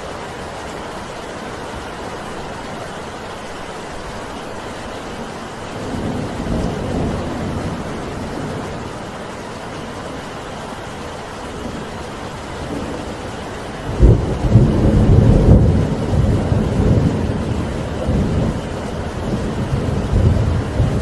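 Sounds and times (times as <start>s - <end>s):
steady rain: 0.0s - 21.0s
thunder clap rumbling: 5.8s - 9.1s, 12.5s - 21.0s.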